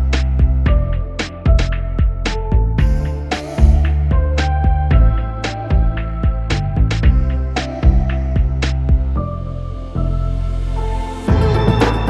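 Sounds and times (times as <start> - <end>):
synth bass and chords: 0.0 - 12.0.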